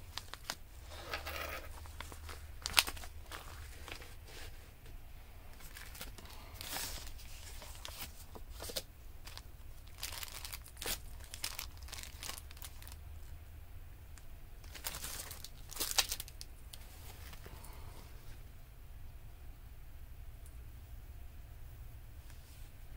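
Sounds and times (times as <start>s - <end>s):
paper rustling and crinkling: 0.0s - 13.0s, 14.6s - 17.6s.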